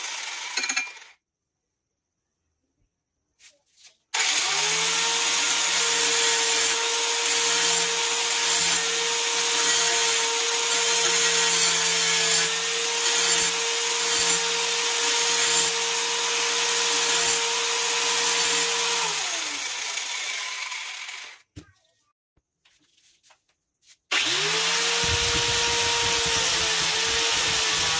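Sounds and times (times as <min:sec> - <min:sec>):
electric grinder motor running: 0:04.2 - 0:21.4, 0:24.1 - 0:27.9.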